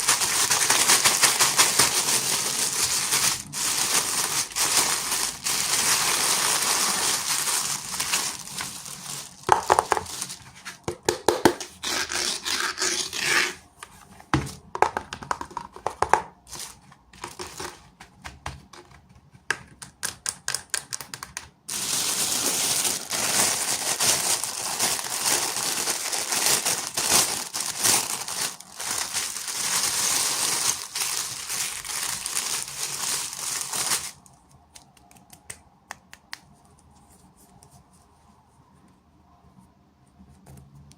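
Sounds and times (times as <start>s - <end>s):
wrapper crinkling and tearing: 0.0s - 10.8s, 16.4s - 18.0s, 21.7s - 34.9s.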